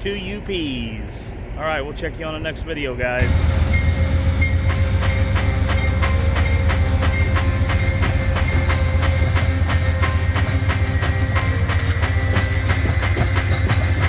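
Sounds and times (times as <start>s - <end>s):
freight train rumbling past: 0.0s - 14.0s
train wheels clickety-clack: 3.2s - 14.0s.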